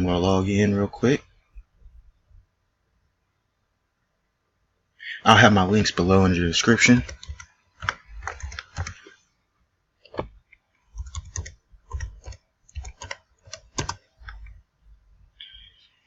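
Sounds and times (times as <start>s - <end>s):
typing on computer keyboard: 6.8s - 9.1s, 11.0s - 14.6s.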